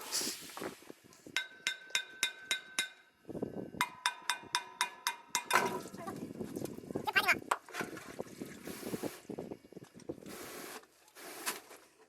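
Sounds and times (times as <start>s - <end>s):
light taps on ringing metal: 1.4s - 3.0s, 3.8s - 5.7s.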